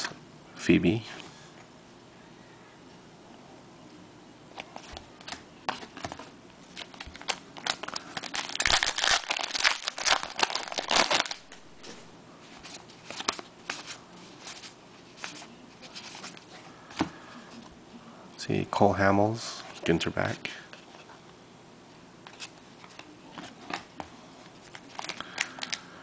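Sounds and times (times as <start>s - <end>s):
wrapper tearing and crinkling: 6.8s - 11.6s.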